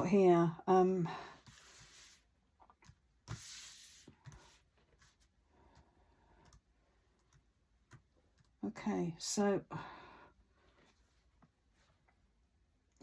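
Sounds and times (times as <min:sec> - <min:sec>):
cards sliding on a table: 0:01.4 - 0:02.3, 0:03.3 - 0:05.3.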